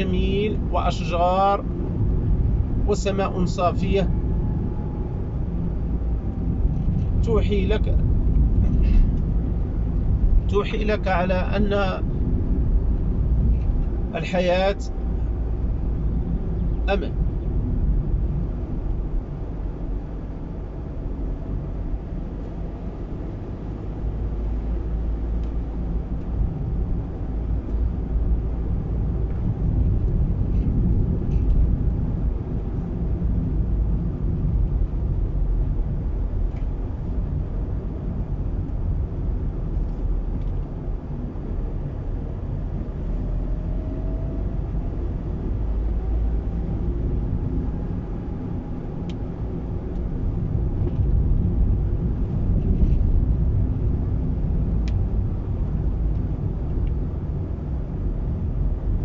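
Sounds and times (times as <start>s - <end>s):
car engine and tyres rumbling: 0.0s - 59.0s
rising whine: 1.6s - 11.0s.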